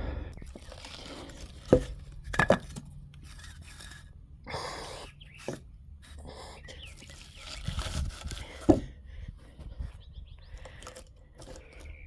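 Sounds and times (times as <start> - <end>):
wooden blocks scraping: 0.4 - 9.0, 10.6 - 12.0
wooden blocks knocking: 1.7 - 2.8.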